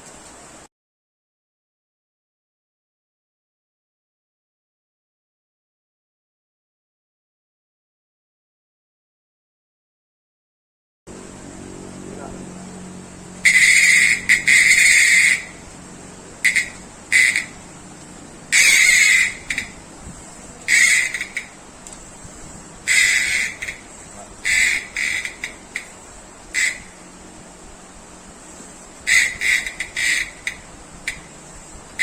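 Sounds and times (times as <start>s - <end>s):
fishing reel ratchet clicking: 13.5s - 15.6s, 16.5s - 17.5s, 18.6s - 19.7s, 20.7s - 21.5s, 22.9s - 23.8s, 24.4s - 26.0s, 29.1s - 31.3s.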